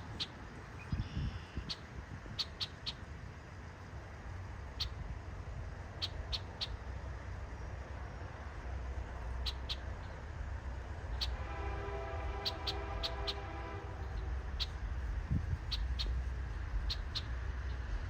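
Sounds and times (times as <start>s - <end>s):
locomotive horn chord: 11.2s - 14.5s.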